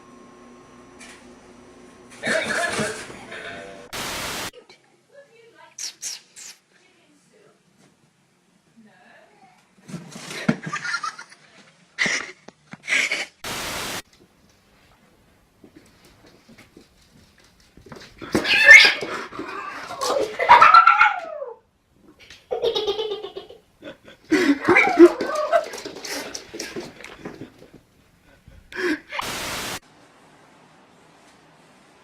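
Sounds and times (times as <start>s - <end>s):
burst of noise: 3.9s - 4.5s, 13.4s - 14.0s, 29.2s - 29.8s
cat yowling: 18.4s - 21.6s.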